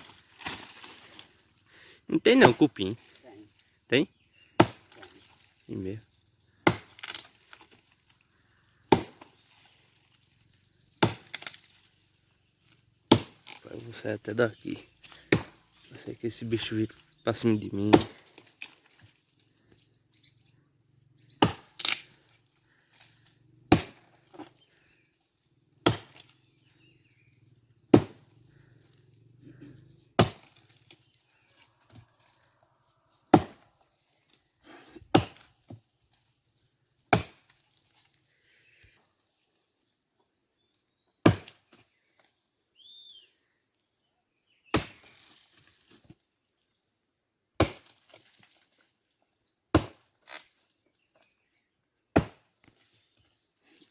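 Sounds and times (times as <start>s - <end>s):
insects droning: 0.0s - 53.9s
axe chopping wood: 4.6s - 5.3s, 6.6s - 7.5s, 8.9s - 9.4s, 11.0s - 11.6s, 13.1s - 13.6s, 15.0s - 15.6s, 17.9s - 18.5s, 21.4s - 22.1s, 23.7s - 24.5s, 25.8s - 26.3s, 27.9s - 28.2s, 30.2s - 30.6s, 33.3s - 33.6s, 35.1s - 35.5s, 37.1s - 37.5s, 41.2s - 41.6s, 44.7s - 45.2s, 47.6s - 48.3s, 49.7s - 50.4s, 52.1s - 52.5s.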